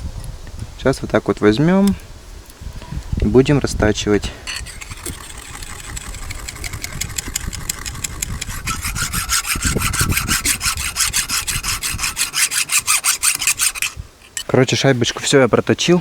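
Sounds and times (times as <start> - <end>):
hand file rasping on metal: 4.4 - 14.6.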